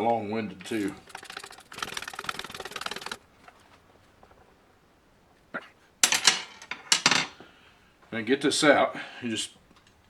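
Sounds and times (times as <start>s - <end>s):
ratchet wrench clicking rapidly: 0.8s - 3.2s
metal tools clattering: 6.0s - 7.4s.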